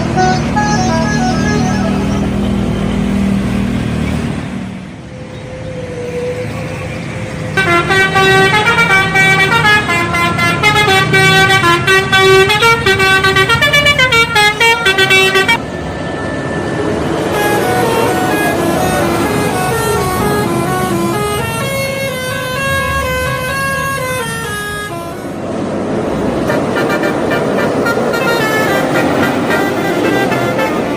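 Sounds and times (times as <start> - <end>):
musical bus horn tune: 0.0 - 2.8, 7.5 - 15.6, 17.3 - 25.5, 26.4 - 30.9
bus engine running: 0.0 - 30.9.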